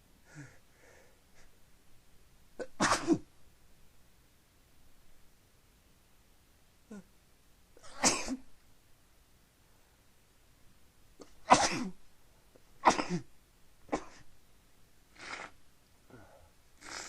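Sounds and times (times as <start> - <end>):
person sneezing: 7.8 - 8.4, 12.8 - 13.3, 13.9 - 14.3.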